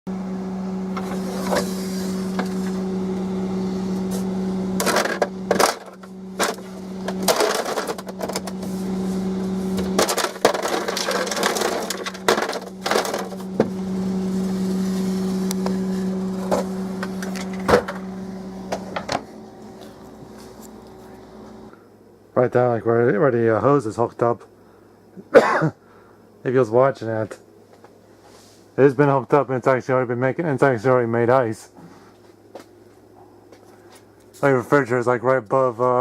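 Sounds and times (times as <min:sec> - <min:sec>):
ice maker humming: 0:00.1 - 0:21.8.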